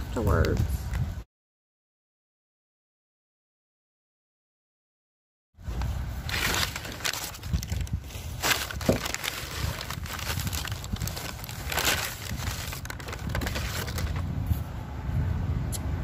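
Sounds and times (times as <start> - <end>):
packaging crinkling: 6.2 - 14.3.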